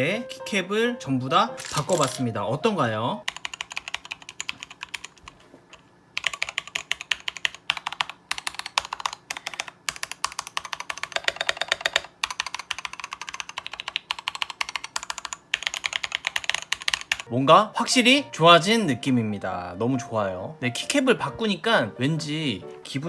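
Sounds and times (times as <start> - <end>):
fast typing on mechanical keyboard: 3.2 - 17.3.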